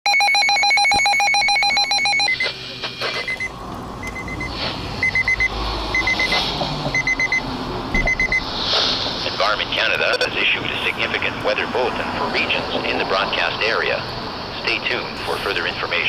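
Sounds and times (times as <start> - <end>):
short high beeps: 3.2 - 6.4, 7.0 - 7.4, 8.0 - 8.4.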